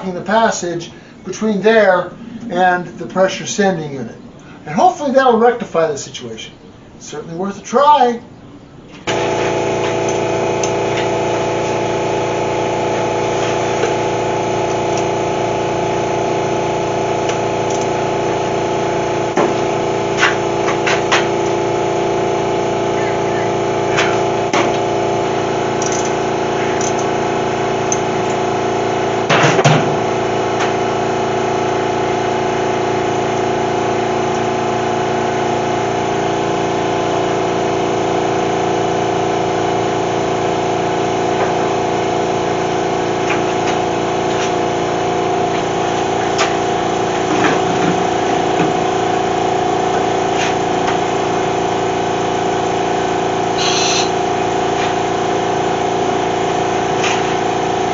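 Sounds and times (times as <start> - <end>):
motor humming: 8.8 - 57.9.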